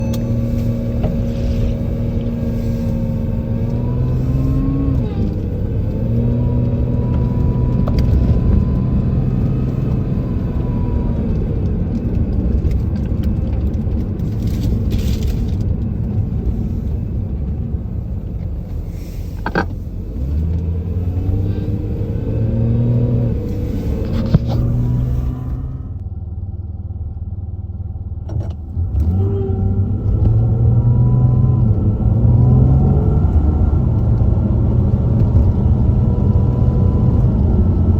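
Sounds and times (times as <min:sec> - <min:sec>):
sharp upward squeal: 0:00.0 - 0:01.9
car engine accelerating: 0:00.0 - 0:26.1, 0:28.3 - 0:37.9.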